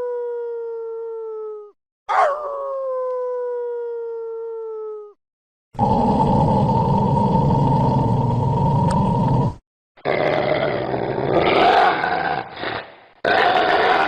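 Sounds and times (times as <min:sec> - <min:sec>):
large dog howling: 0:02.1 - 0:03.4.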